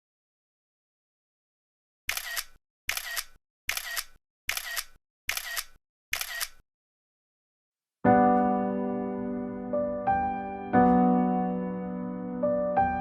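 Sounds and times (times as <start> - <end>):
camera shutter clicking: 2.1 - 6.6.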